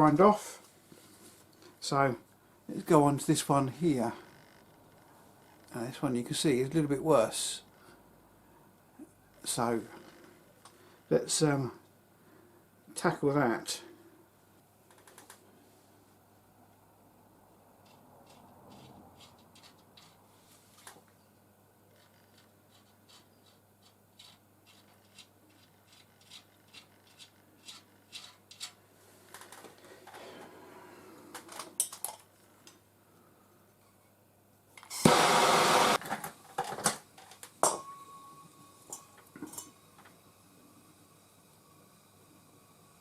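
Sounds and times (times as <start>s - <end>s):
loud noisy burst: 34.9s - 36.0s.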